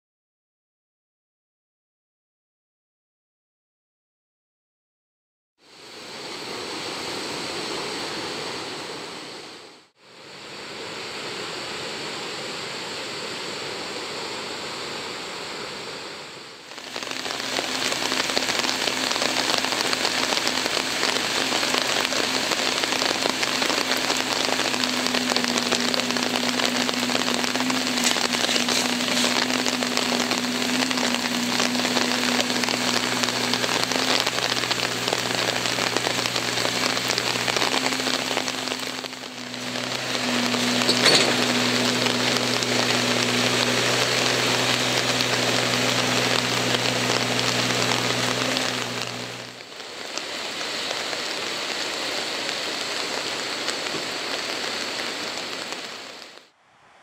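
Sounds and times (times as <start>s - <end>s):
rain falling: 16.6s - 56.6s
low steady hum: 16.8s - 49.6s.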